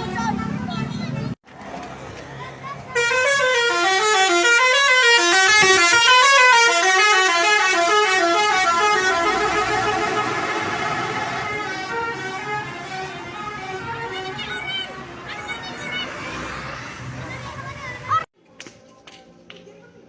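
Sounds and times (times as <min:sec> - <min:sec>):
multi-tone bus horn melody: 0:02.9 - 0:15.9.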